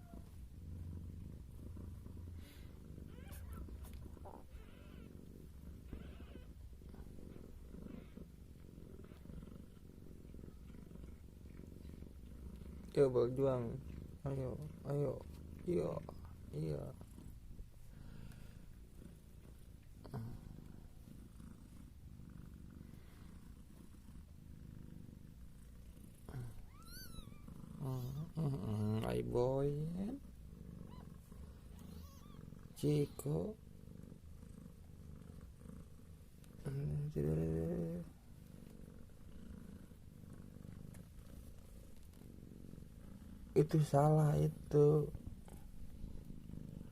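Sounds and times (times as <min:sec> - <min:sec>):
cat purring: 0:00.0 - 0:46.9
kitten mewing: 0:26.4 - 0:29.0.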